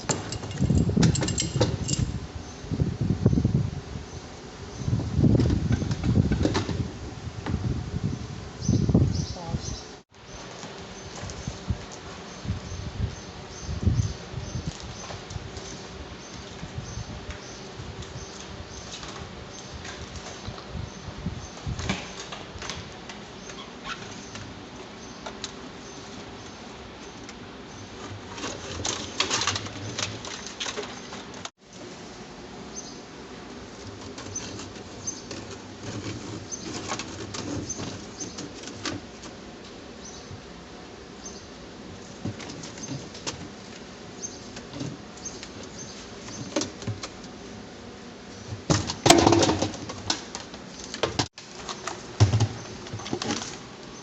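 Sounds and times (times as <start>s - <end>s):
scraping rattling handling noise: 0.0s - 2.2s.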